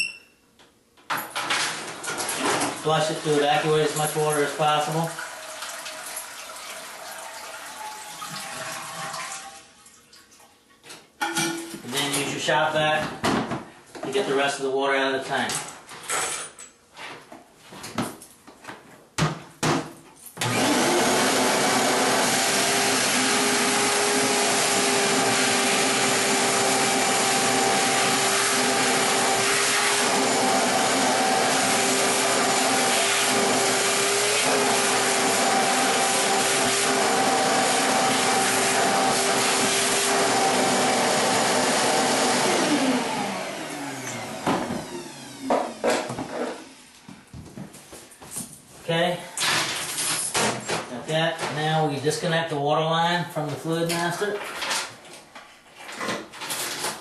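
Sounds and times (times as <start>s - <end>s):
shop vac running with whine: 1.4s - 5.2s, 20.4s - 47.2s.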